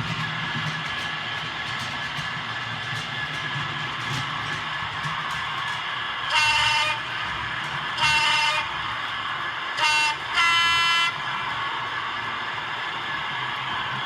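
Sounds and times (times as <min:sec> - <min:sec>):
model locomotive horn blasts: 0:06.3 - 0:07.2, 0:08.0 - 0:08.8, 0:09.8 - 0:11.2.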